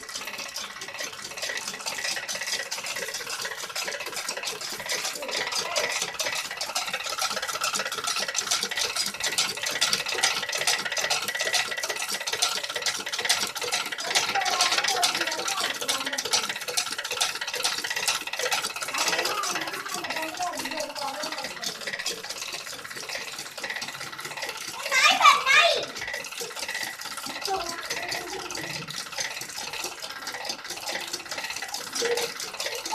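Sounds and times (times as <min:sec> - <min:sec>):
wet grinder running: 0:00.0 - 0:32.9.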